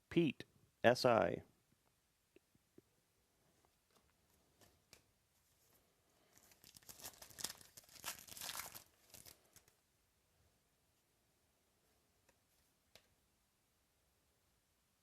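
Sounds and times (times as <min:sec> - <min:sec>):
plastic packaging crinkling: 0:06.3 - 0:09.8.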